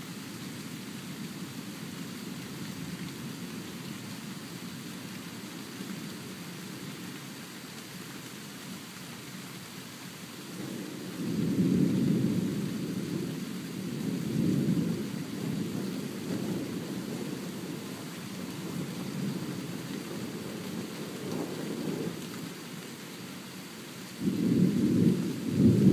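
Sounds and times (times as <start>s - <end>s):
steady rain: 0.0s - 25.9s
thunder rumbling: 10.6s - 17.8s, 24.2s - 25.9s.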